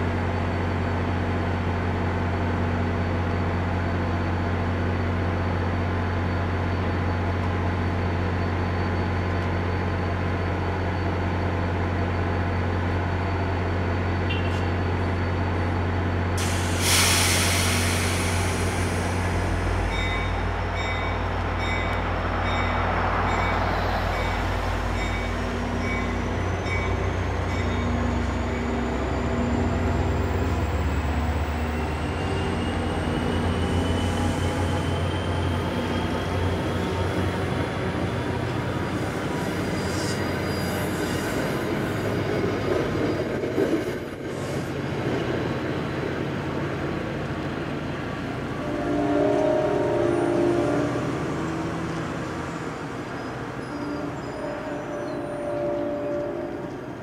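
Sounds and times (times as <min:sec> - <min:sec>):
diesel locomotive running: 0:00.0 - 0:57.0
rising whine of train: 0:00.0 - 0:57.0
air brake hiss: 0:16.4 - 0:19.9
railroad crossing bell ringing: 0:19.8 - 0:28.8, 0:53.0 - 0:56.7.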